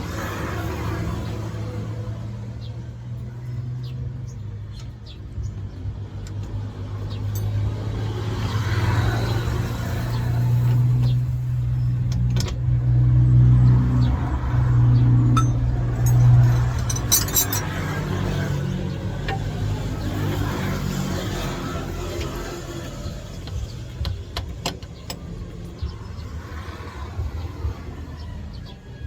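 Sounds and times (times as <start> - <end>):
metallic clinking: 7.1 - 7.8, 15.3 - 18.6.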